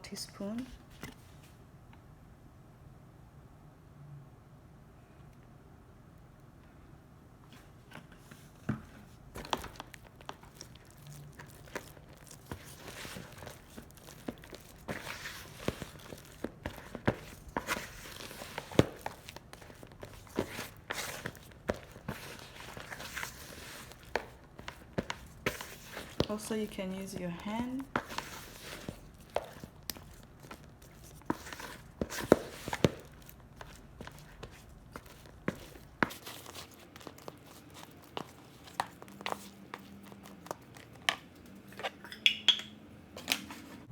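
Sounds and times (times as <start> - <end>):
dough scraping and squishing: 7.9 - 42.0.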